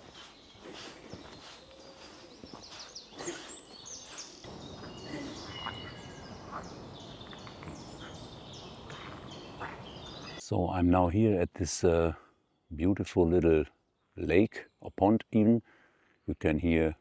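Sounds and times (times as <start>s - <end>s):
chorus of high animal calls: 0.6s - 10.4s.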